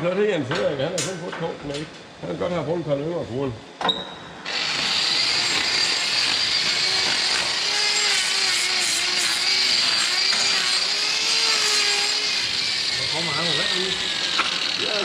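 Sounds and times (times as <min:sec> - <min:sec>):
power tool whining: 0:04.4 - 0:15.0.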